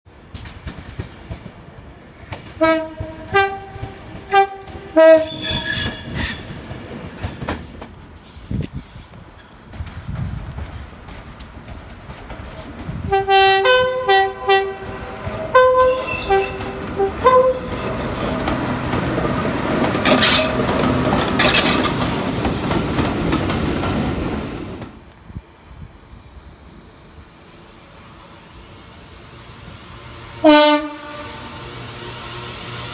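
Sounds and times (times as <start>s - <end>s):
train passing with wheel noise: 0.1s - 32.9s
train two-tone horn blasts: 2.6s - 6.6s, 13.0s - 22.2s, 30.4s - 31.9s.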